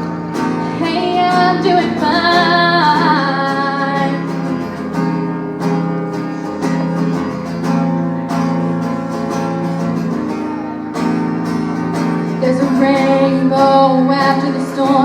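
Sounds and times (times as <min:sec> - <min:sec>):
acoustic guitar strumming chords: 0:00.0 - 0:15.0
person singing: 0:00.6 - 0:04.5, 0:12.4 - 0:15.0.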